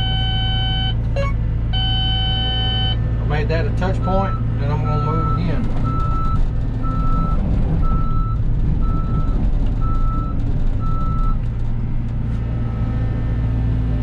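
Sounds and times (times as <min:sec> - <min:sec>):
travel alarm beeping: 0:00.0 - 0:03.0
excavator diesel engine: 0:00.0 - 0:14.0.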